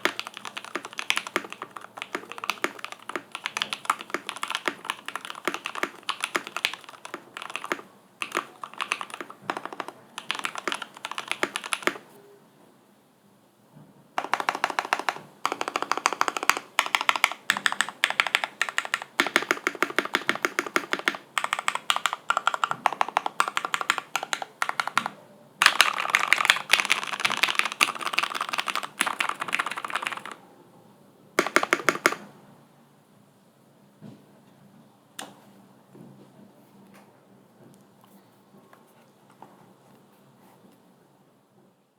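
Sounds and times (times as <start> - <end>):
mechanical keyboard key clacks: 0.0 - 12.0, 14.2 - 30.4, 31.4 - 32.2.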